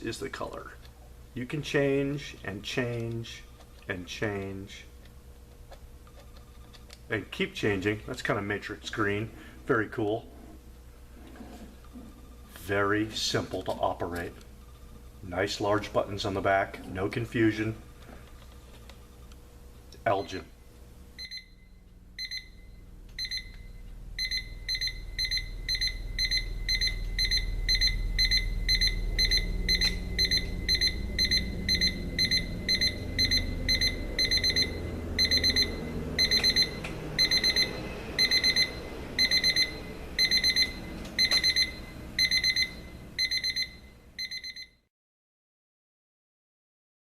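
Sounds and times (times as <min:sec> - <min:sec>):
digital alarm clock beeping: 0:21.2 - 0:44.8.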